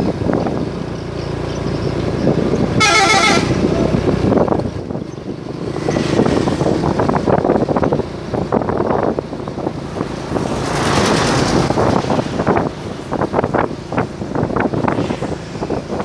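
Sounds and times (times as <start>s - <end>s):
passing vehicles: 0.0s - 16.0s
musical bus horn warbling: 2.8s - 4.0s.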